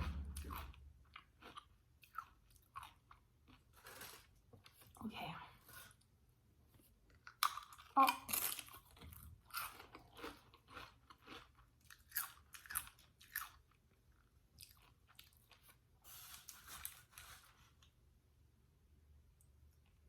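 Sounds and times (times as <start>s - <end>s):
person chewing crunchy food: 0.0s - 5.0s, 7.1s - 17.3s.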